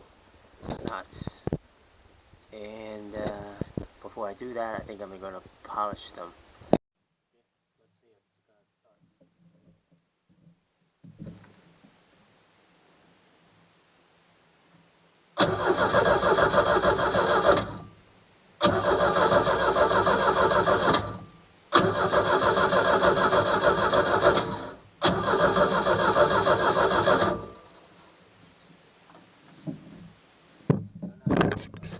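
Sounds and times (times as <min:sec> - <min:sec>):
starter motor cranking engine: 0:15.4 - 0:17.9, 0:18.6 - 0:27.8.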